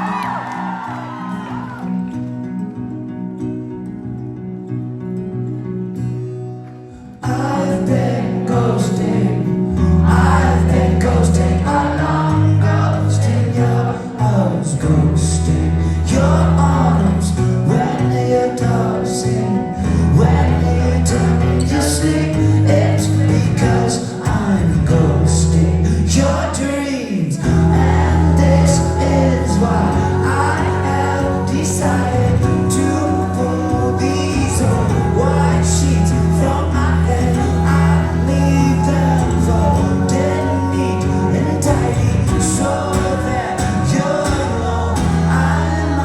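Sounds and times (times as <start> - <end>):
voices singing: 0.0 - 2.1, 7.2 - 46.0
live rock band playing: 27.4 - 46.0.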